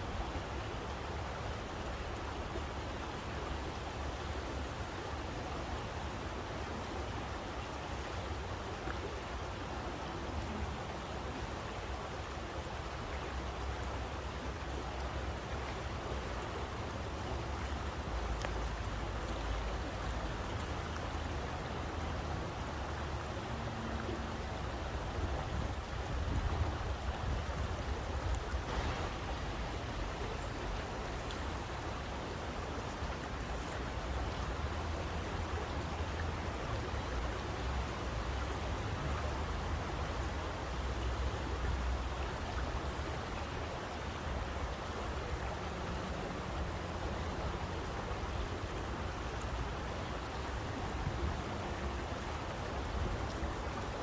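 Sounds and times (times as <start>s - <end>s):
rushing water: 0.0s - 54.0s
faint click: 18.4s - 18.6s.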